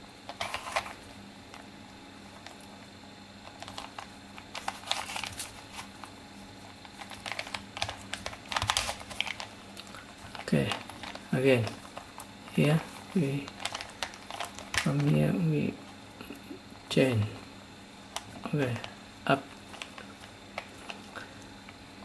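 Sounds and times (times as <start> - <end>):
puzzle cube clicking and rattling: 0.3 - 0.9, 3.5 - 5.9, 7.0 - 9.5, 12.9 - 15.2.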